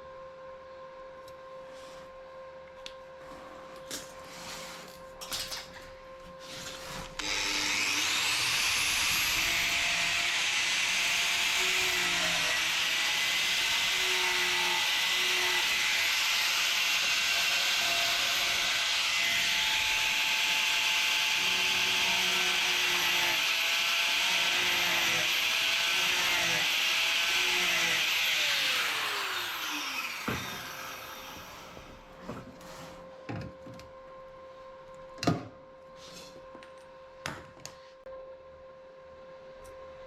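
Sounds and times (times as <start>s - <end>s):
angle grinder grinding metal: 7.2s - 31.9s
grinder winding down whine: 7.2s - 32.0s.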